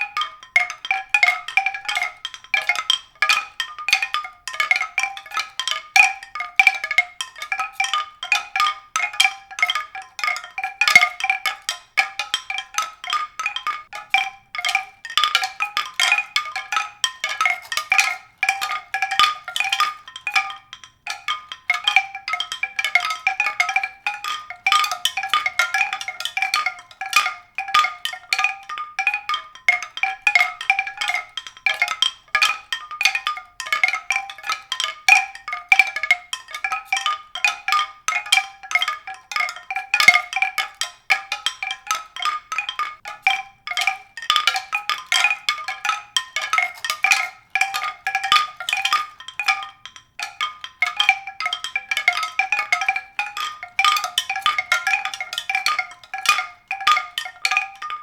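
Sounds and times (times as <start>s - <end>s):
pitched percussion struck rapidly: 0.0s - 39.0s.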